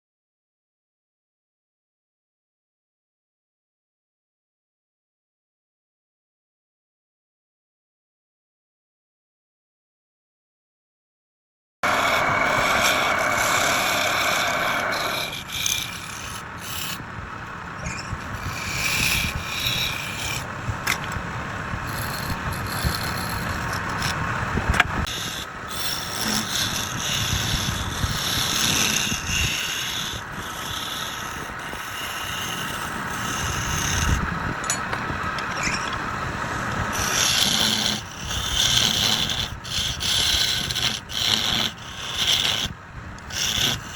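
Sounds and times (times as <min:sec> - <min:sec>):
tool scraping wood on a lathe: 0:11.8 - 0:17.0, 0:18.1 - 0:43.9.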